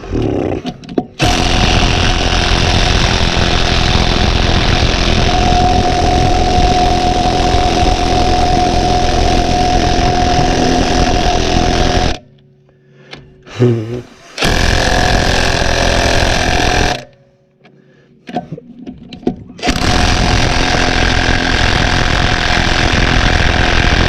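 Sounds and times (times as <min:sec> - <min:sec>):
impact wrench hammering: 0:01.2 - 0:04.2, 0:14.4 - 0:17.2, 0:19.6 - 0:24.0.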